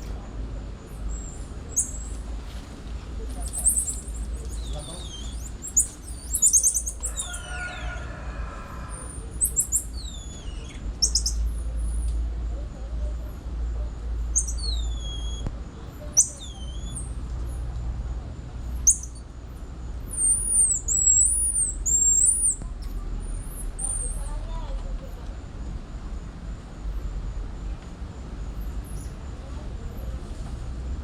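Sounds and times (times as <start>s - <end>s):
monkeys chirping and peeping: 1.0s - 2.2s, 3.3s - 7.9s, 8.9s - 12.1s, 14.2s - 17.6s, 18.6s - 19.3s, 20.0s - 24.3s.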